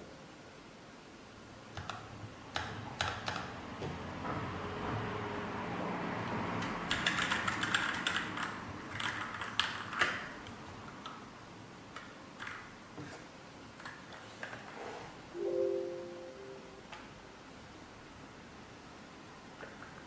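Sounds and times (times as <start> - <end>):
mechanical keyboard keystrokes: 6.9 - 10.2.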